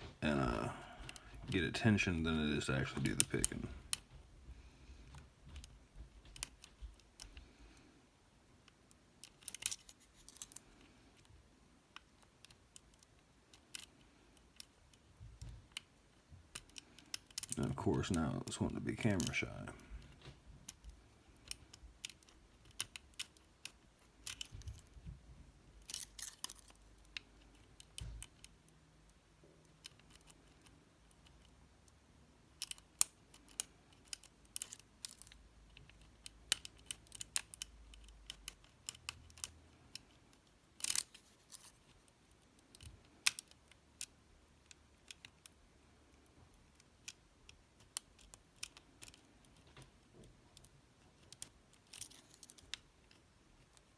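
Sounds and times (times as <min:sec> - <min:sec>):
lock pick clicking and scraping: 0:09.2 - 0:11.3, 0:12.0 - 0:17.6, 0:20.7 - 0:25.0, 0:25.8 - 0:28.6, 0:29.6 - 0:31.5, 0:32.6 - 0:45.6, 0:46.2 - 0:53.9.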